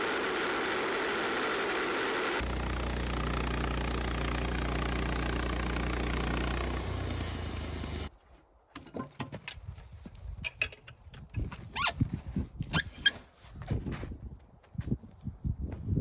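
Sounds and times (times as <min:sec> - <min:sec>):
sawmill engine running: 0:00.0 - 0:08.1.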